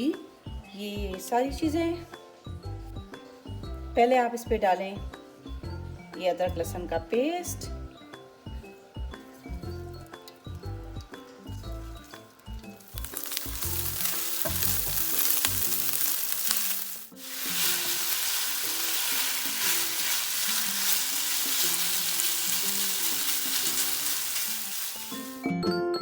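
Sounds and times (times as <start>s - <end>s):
food sizzling in oil: 10.2s - 25.5s.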